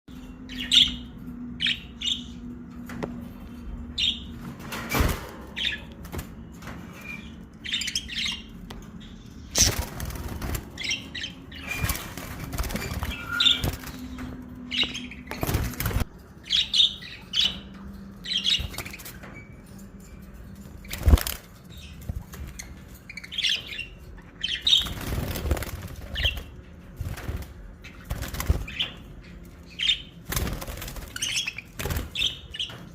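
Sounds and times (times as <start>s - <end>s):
lovebirds chirping: 27.9s - 32.9s.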